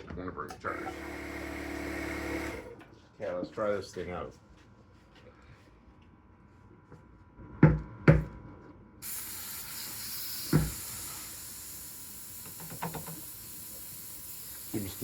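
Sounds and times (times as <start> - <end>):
compressed air hissing: 9.0 - 15.0.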